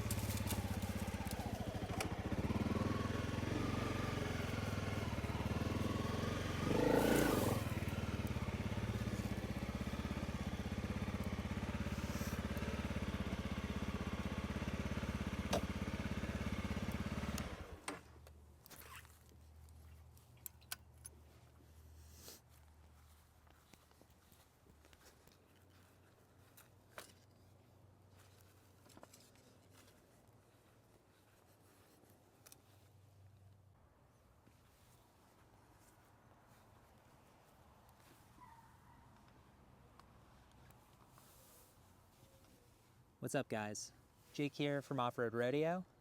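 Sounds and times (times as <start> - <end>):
motorcycle engine running: 0.0 - 17.8.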